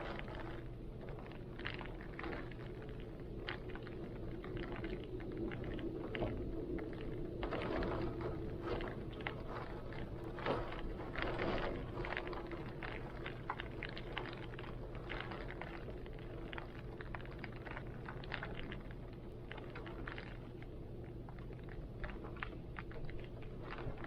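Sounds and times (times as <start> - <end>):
heavy rain drops ticking: 0.0 - 24.0
low wind rumble: 0.0 - 24.0.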